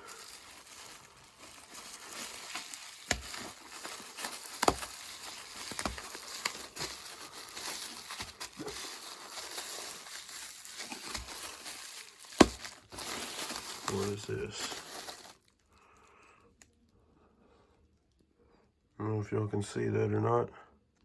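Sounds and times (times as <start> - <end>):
packaging rustling and crinkling: 0.0 - 15.6.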